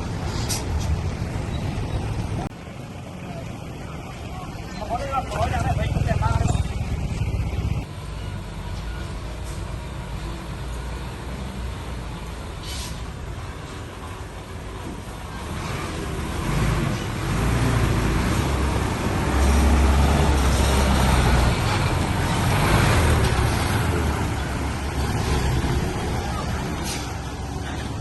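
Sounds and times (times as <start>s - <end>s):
heavy diesel engine under load: 0.0s - 28.0s.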